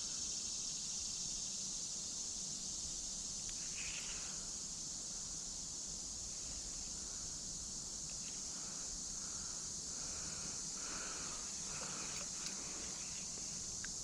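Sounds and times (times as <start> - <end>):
shrill insect chorus: 0.0 - 14.0
faint ticks: 3.4 - 4.3, 8.0 - 8.6, 11.3 - 14.0.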